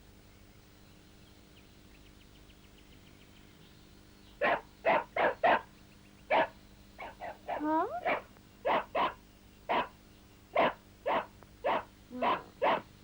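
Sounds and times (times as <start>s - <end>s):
short sharp animal calls: 6.3s - 9.9s, 10.6s - 12.9s.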